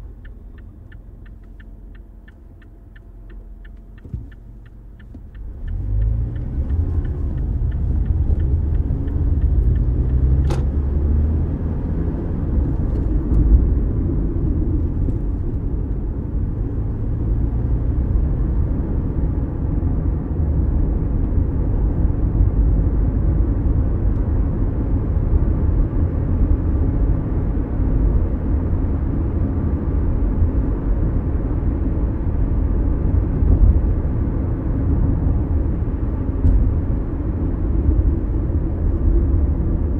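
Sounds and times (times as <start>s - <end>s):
regular ticking: 0.0s - 10.9s
car engine and road noise: 0.0s - 39.9s.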